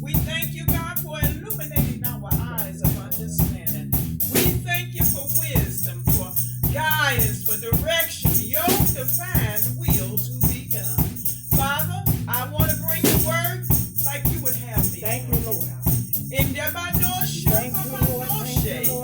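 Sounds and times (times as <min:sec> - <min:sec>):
shaken percussion beat: 0:00.0 - 0:19.0
steady bass line: 0:00.0 - 0:19.0
person singing: 0:04.4 - 0:19.0.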